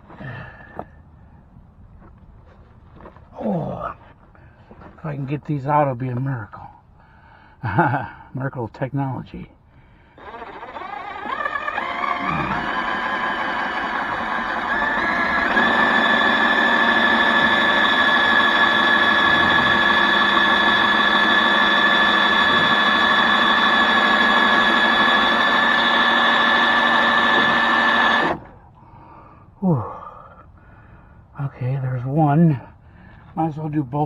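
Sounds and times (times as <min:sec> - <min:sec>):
electric drill motor whine: 0:10.1 - 0:28.5.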